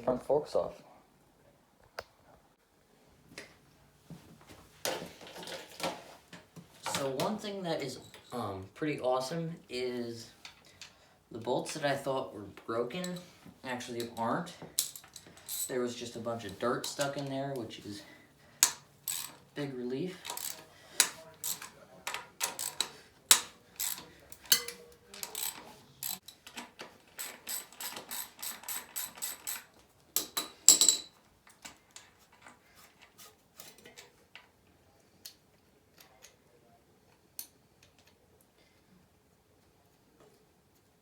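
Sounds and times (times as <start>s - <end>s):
socket ratchet clicking: 18.6s - 19.5s, 20.2s - 30.9s.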